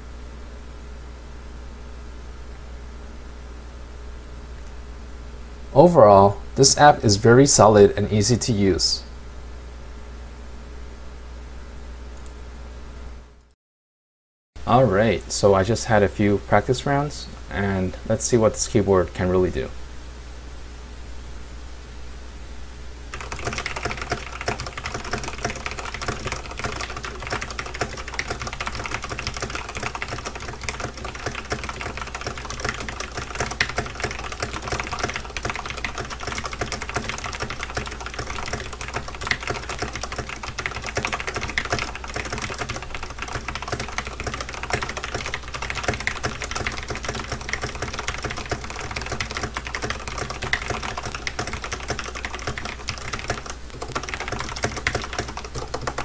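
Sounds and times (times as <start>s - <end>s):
fast mechanical keyboard typing: 23.1s - 56.0s.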